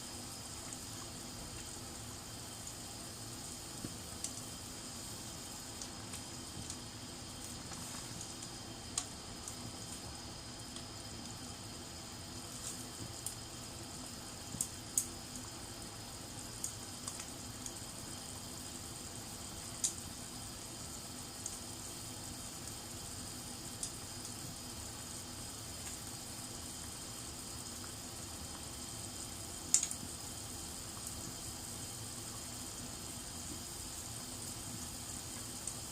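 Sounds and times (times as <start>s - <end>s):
food sizzling hiss: 0.0s - 35.9s
sharp pops and ticks: 3.8s - 4.6s, 5.8s - 10.1s, 14.5s - 15.5s, 16.6s - 17.8s, 19.8s - 20.0s, 29.7s - 30.1s.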